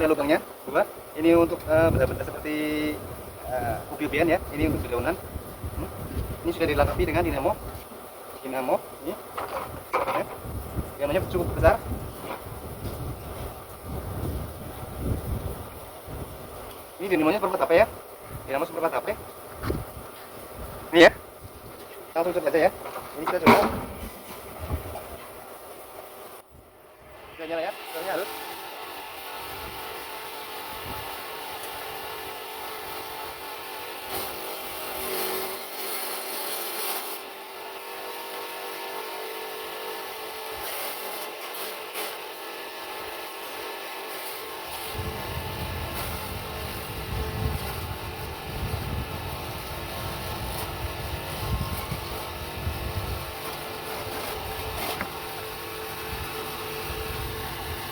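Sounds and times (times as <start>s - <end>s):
electric motor and spinning blades: 0.0s - 57.9s
harsh grinding noise: 44.1s - 57.9s.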